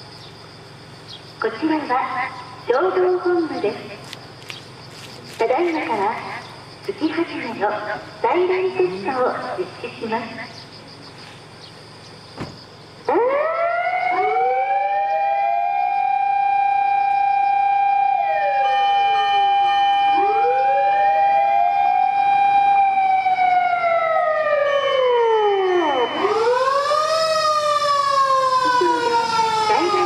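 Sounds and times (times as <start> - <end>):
other sirens rising and falling: 13.0 - 30.0
fire engine siren: 13.1 - 30.0
loudspeaker siren wailing: 13.1 - 30.0.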